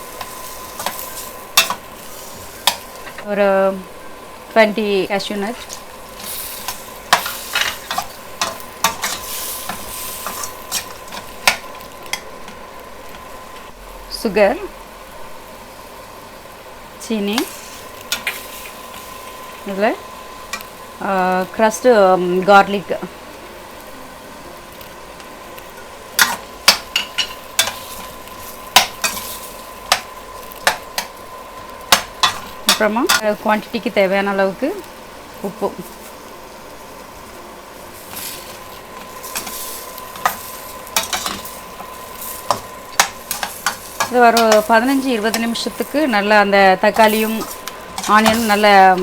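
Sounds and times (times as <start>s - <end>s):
spoon scraping a pan: 0.0s - 3.2s, 5.5s - 13.2s, 25.8s - 31.2s, 31.9s - 33.2s, 38.0s - 49.0s
onion and tomatoes sizzling: 0.0s - 49.0s.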